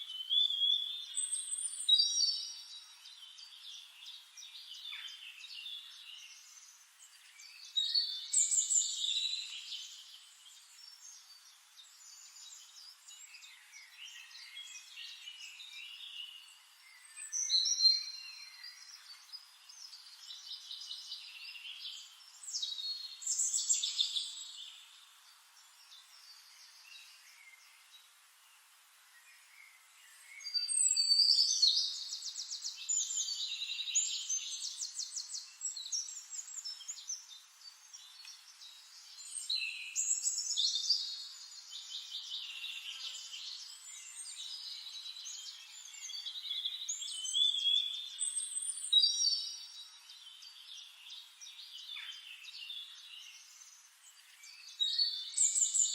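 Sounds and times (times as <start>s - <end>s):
songbirds singing and chirping: 0.0s - 55.9s.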